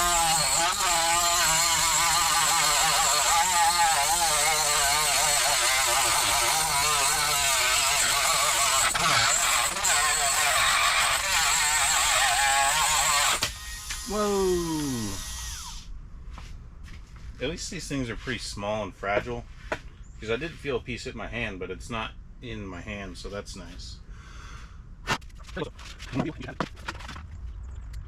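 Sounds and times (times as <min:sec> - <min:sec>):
rotary tool grinding bolt: 0:00.0 - 0:14.2, 0:14.8 - 0:15.9.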